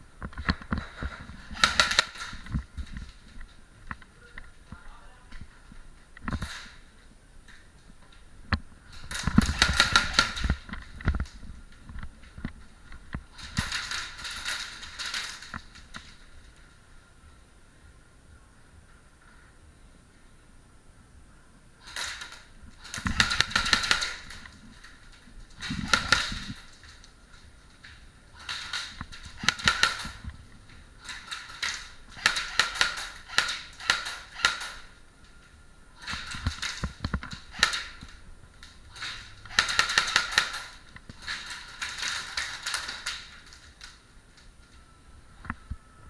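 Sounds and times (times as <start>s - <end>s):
airsoft guns firing bursts: 0.8s - 2.6s, 9.0s - 11.2s, 21.8s - 24.5s, 25.6s - 26.8s, 28.4s - 30.4s, 31.0s - 35.0s, 36.0s - 38.2s, 38.9s - 43.9s.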